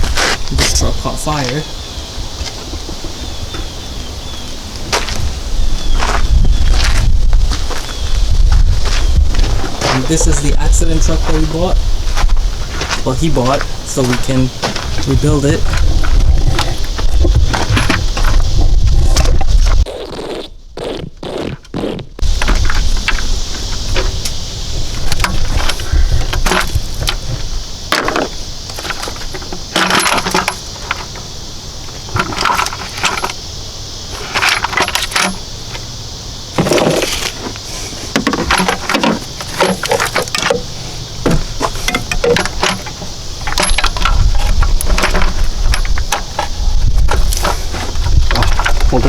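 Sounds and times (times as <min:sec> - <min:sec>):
steady high hiss: 0:00.0 - 0:19.8, 0:22.2 - 0:49.0
metal tools clinking and scraping: 0:25.0 - 0:27.3, 0:28.0 - 0:31.2, 0:32.1 - 0:33.4, 0:34.1 - 0:35.4, 0:36.6 - 0:49.0.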